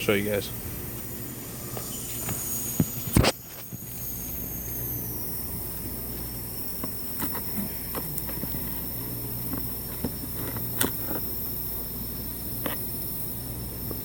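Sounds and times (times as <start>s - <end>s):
faint high whine: 0.0s - 14.0s
steady low hum: 0.0s - 14.0s.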